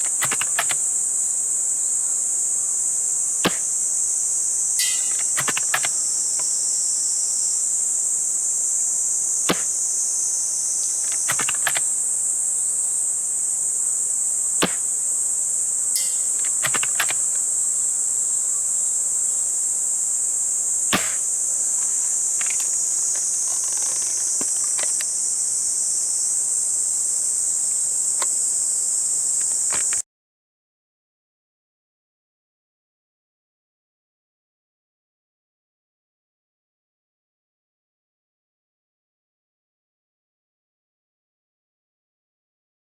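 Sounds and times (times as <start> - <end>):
small clicks: 0.0 - 0.9
insect chorus buzzing: 0.0 - 30.0
airsoft rifle shots: 3.4 - 3.8, 9.5 - 10.0, 14.6 - 15.0, 16.0 - 17.5, 20.9 - 25.0.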